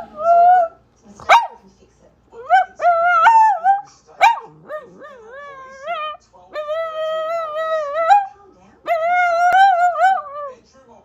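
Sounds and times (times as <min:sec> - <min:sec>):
dog whining: 0:02.4 - 0:08.3
dog yelping: 0:02.4 - 0:08.3.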